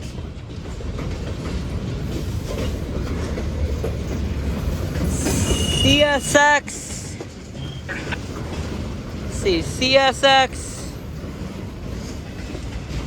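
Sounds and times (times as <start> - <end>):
steel wheels clattering on rails: 0.0 - 13.0
high squeal: 5.2 - 6.4.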